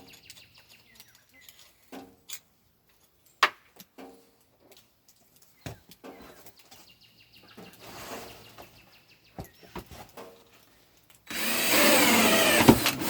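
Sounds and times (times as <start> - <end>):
noisy whir: 11.3 - 13.0.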